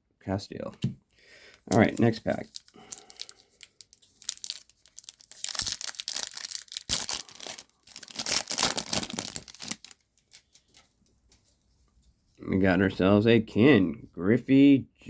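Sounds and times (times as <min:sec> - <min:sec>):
wrapper tearing and crinkling: 0:01.7 - 0:10.8.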